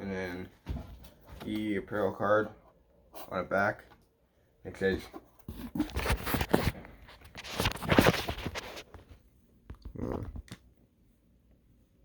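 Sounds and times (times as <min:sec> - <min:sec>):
packaging and paper rustling: 0:05.5 - 0:09.1.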